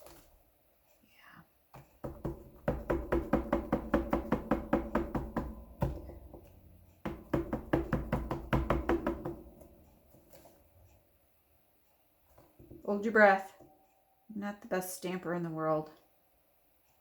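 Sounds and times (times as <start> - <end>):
ink pad tapping on stamp: 2.0 - 6.4, 7.1 - 9.6.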